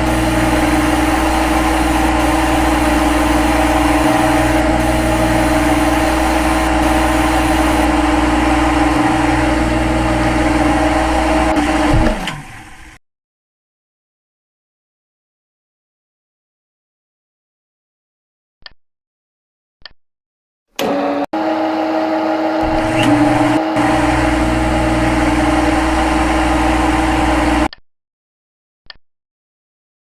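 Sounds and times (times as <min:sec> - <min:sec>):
lathe running and winding down: 0:00.0 - 0:12.8, 0:20.8 - 0:27.7.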